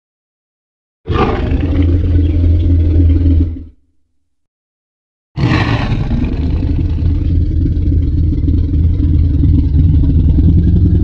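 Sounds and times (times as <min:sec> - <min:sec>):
deep rumbling growl: 0:01.1 - 0:03.9, 0:05.4 - 0:11.0.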